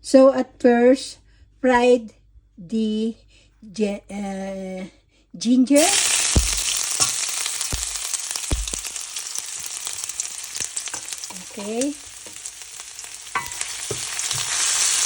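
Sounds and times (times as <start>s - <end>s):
ginger sizzling in hot oil: 5.8s - 15.0s.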